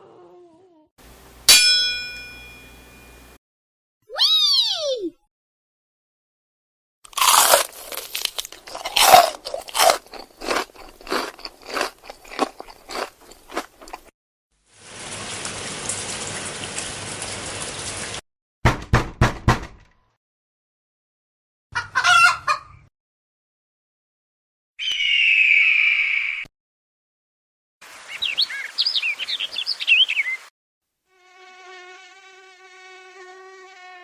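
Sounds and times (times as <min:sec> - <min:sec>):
sharp crunching cracks: 0:07.1 - 0:14.1
sharp knocks: 0:18.6 - 0:19.9.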